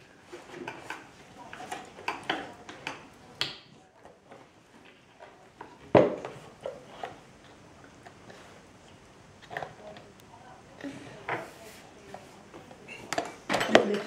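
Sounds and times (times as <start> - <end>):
cutlery and dishes clinking: 12.9 - 14.0.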